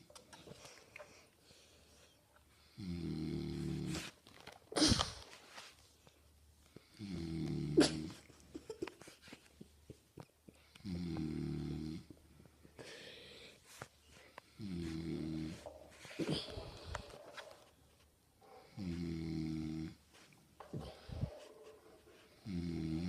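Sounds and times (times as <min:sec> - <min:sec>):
man snoring: 0:02.8 - 0:03.9, 0:07.0 - 0:08.1, 0:10.8 - 0:12.1, 0:18.8 - 0:20.0, 0:22.4 - 0:23.0.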